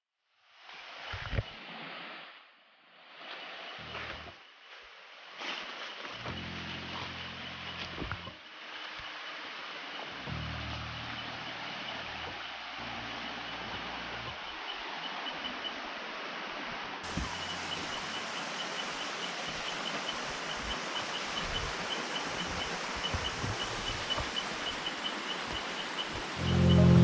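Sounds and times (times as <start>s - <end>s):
rushing water of waterfall: 3.0s - 27.0s
high chirp: 26.4s - 27.0s
loud low tone: 26.4s - 27.0s.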